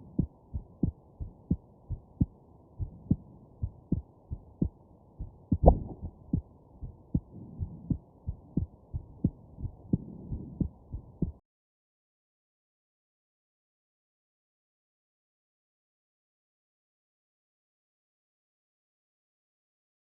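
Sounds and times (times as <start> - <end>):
human heartbeat: 0.0 - 11.4.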